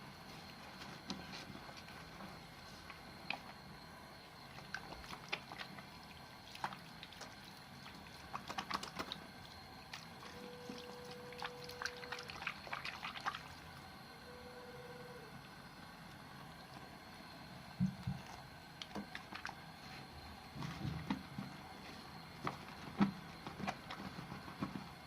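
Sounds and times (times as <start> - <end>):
faint steady tone: 0.0 - 25.0
wet soap squishing: 4.5 - 13.8, 18.2 - 19.6, 22.4 - 24.8.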